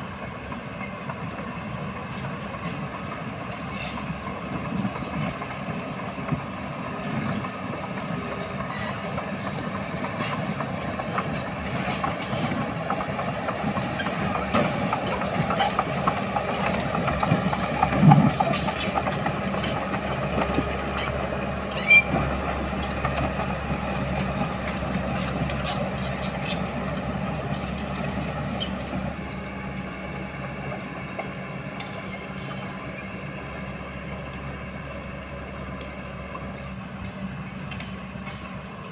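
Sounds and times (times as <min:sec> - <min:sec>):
diesel engine running under load: 0:00.0 - 0:38.9
crawler tracks squealing: 0:00.1 - 0:38.9.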